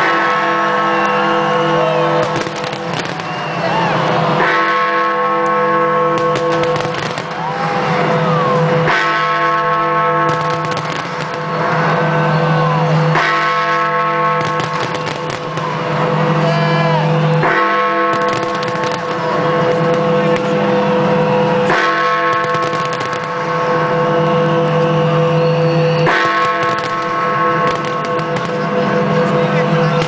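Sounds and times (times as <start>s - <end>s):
crowd shouting and cheering: 0.0s - 30.0s
deep bell strokes: 23.3s - 30.0s.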